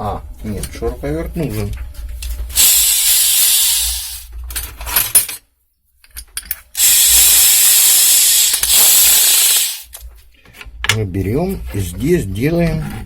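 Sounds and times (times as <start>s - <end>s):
cordless drill running: 2.5s - 4.3s, 6.8s - 9.9s.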